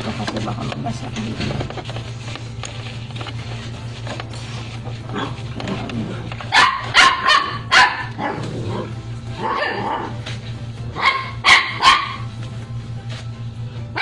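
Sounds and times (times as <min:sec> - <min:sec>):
dog barking: 0:06.5 - 0:08.5, 0:09.4 - 0:10.1, 0:11.0 - 0:12.3.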